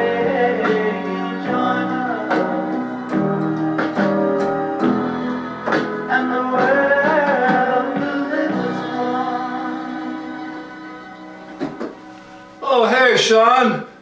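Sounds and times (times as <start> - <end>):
person singing: 0.0 - 3.2, 6.0 - 11.3.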